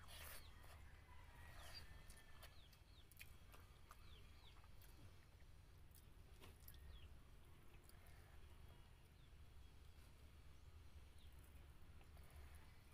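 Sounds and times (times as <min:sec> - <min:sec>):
low steady hum: 0:00.0 - 0:12.9
birds chirping: 0:01.4 - 0:05.6, 0:06.6 - 0:12.9
mouth clicks while chewing: 0:02.1 - 0:05.0.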